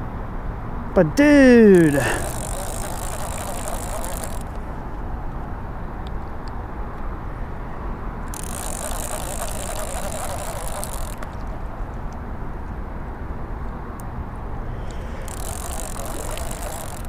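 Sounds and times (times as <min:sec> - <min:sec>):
fishing reel whirring: 0:01.6 - 0:05.0, 0:08.2 - 0:12.0, 0:14.6 - 0:17.0.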